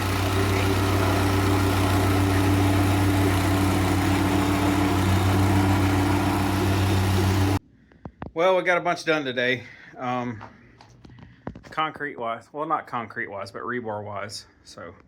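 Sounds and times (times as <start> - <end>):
engine idling: 0.0 - 7.6.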